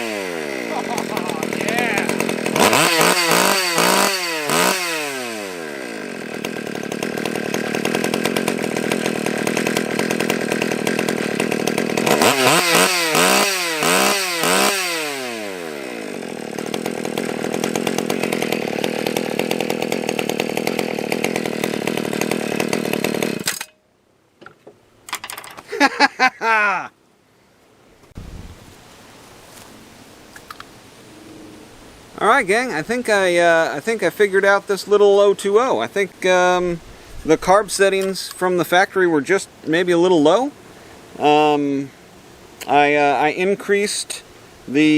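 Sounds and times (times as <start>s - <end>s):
chainsaw engine idling and revving: 0.0s - 23.7s.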